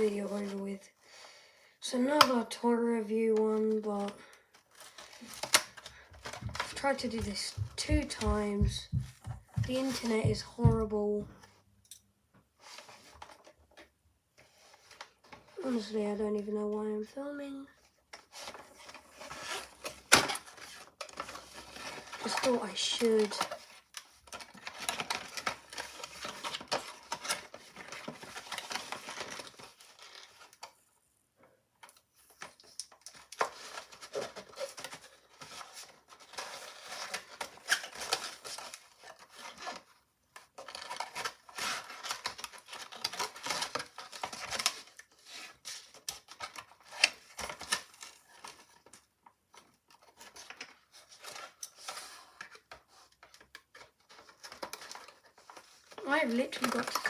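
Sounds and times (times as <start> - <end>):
packaging rustling and tearing: 4.3 - 10.3, 18.1 - 30.7, 31.9 - 57.0.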